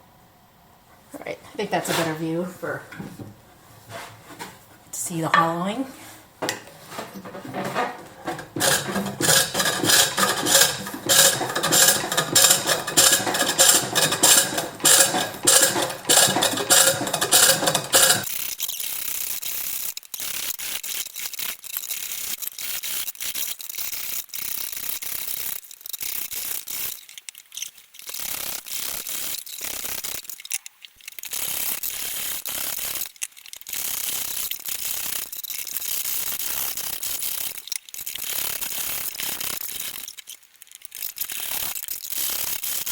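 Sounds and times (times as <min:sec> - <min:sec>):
tool chattering against wood: 0:06.4 - 0:18.3.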